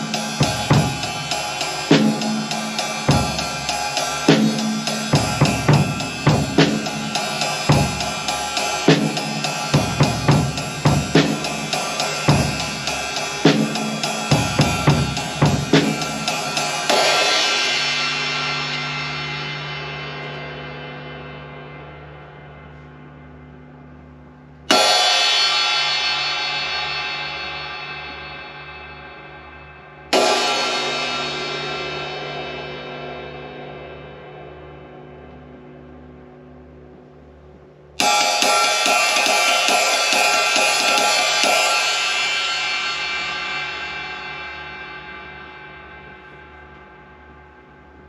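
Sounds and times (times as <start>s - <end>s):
drum kit groove with ride cymbal: 0.0s - 20.4s, 24.7s - 29.0s, 30.1s - 34.1s, 38.0s - 46.4s.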